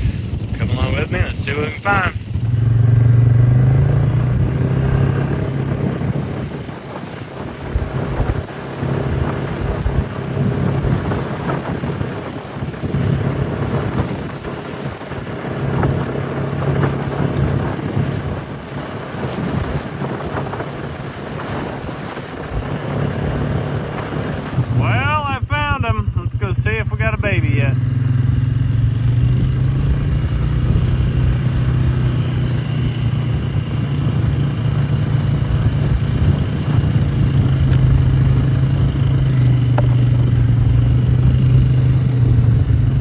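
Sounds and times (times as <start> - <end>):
vehicle engine running: 0.0 - 43.0
knocks and rattles: 37.6 - 41.5.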